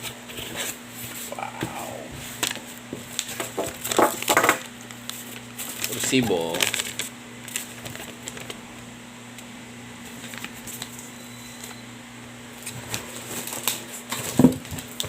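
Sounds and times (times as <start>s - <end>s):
packaging and paper rustling: 2.2s - 8.6s, 10.0s - 11.1s, 12.6s - 15.0s.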